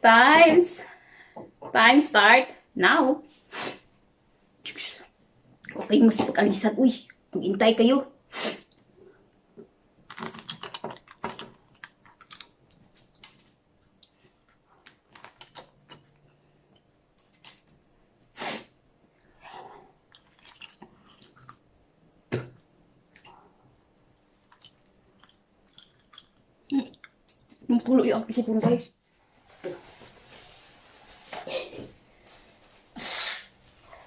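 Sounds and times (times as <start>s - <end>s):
eggshells cracking and peeling: 10.0s - 14.1s, 14.8s - 17.8s, 20.1s - 21.6s, 24.5s - 27.6s.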